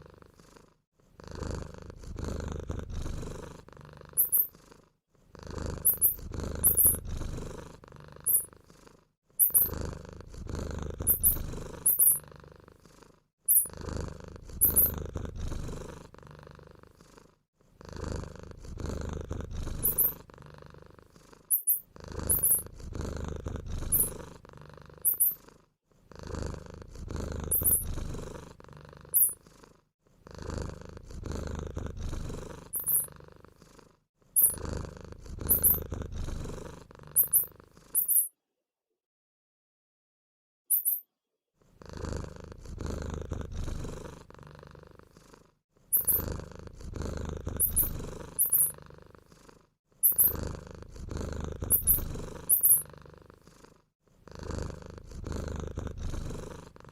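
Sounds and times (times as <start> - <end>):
cat purring: 0.0 - 38.3, 41.6 - 56.9
high-pitched squeaks: 4.2 - 4.5, 5.9 - 7.0, 9.4 - 9.7, 21.5 - 22.6, 40.7 - 41.0, 50.0 - 50.4.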